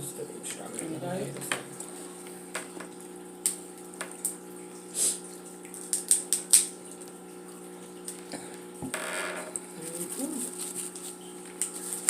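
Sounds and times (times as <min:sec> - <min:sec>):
eating smacks and clicks: 0:05.6 - 0:06.8.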